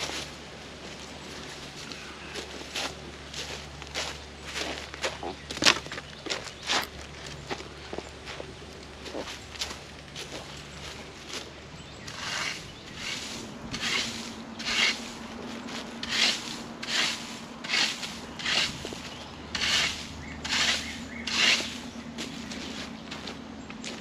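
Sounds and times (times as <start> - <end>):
broom sweeping leaves: 0.0 - 4.9, 9.1 - 23.4.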